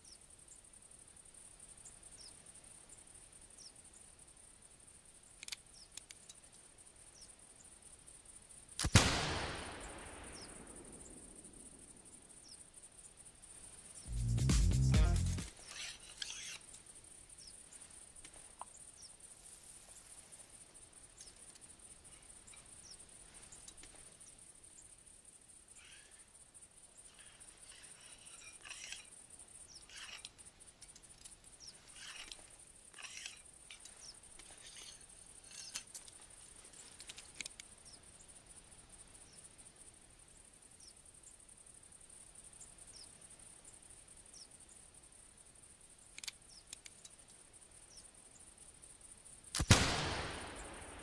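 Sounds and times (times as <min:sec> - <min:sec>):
small clicks: 0:05.3 - 0:06.6, 0:29.8 - 0:37.8, 0:46.0 - 0:47.4, 0:49.5 - 0:50.9
gunshot with echo: 0:08.8 - 0:11.2, 0:49.6 - 0:51.0
rustling: 0:27.0 - 0:37.6.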